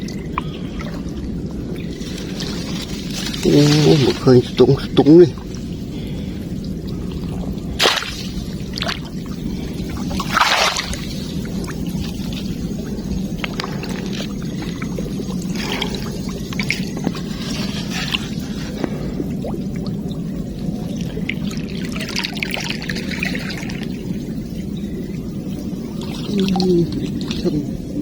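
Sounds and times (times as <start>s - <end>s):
flowing water rushing: 0.0s - 28.0s
water pouring and splashing: 0.0s - 28.0s.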